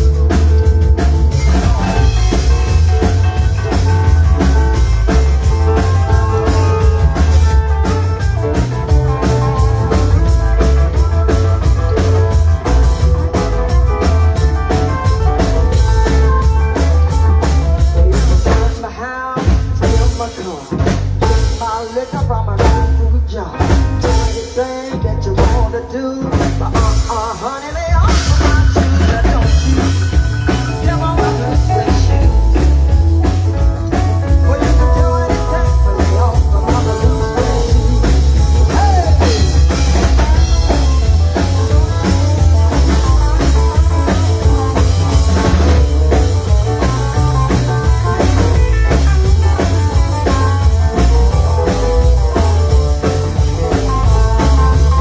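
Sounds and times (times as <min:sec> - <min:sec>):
live rock and roll band: 0:00.0 - 0:55.0.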